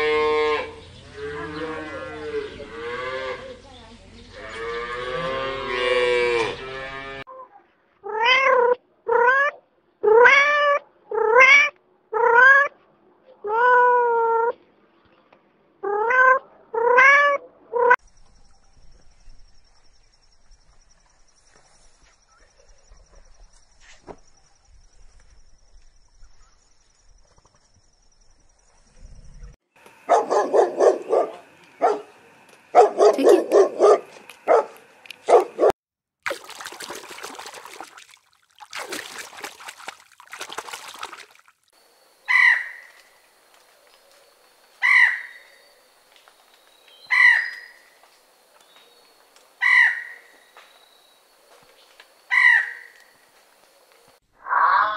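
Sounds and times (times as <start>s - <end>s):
cat meowing: 8.1s - 12.7s, 15.8s - 18.0s
dog barking: 30.1s - 35.8s
harsh bird call: 54.4s - 54.9s.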